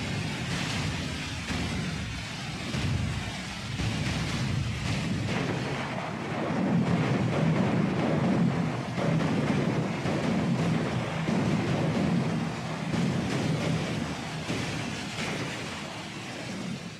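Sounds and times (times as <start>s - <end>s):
deep rumble: 0.0s - 15.4s
heavy rain falling: 0.0s - 16.9s.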